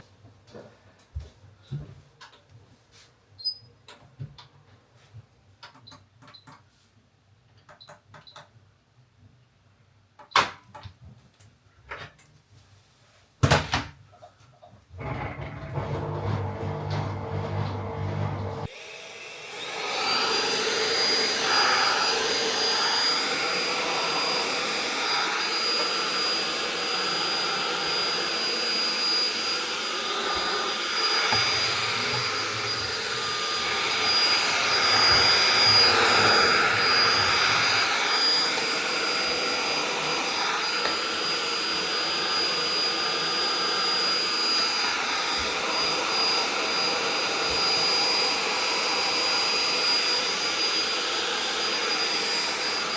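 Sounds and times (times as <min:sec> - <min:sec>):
vacuum cleaner running: 0:15.0 - 0:52.9.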